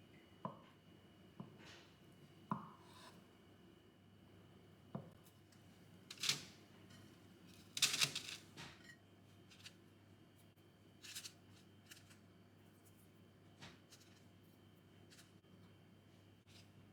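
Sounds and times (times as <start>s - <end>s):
faint room hum: 0.0s - 16.9s
objects rustling and clicking: 6.1s - 8.9s.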